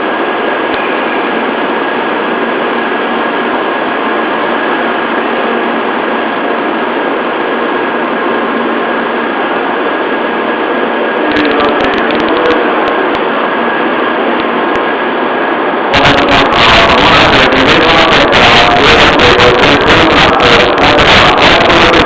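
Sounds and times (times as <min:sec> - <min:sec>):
train hum and hiss: 0:00.0 - 0:22.0
sharp clicks: 0:11.3 - 0:13.2.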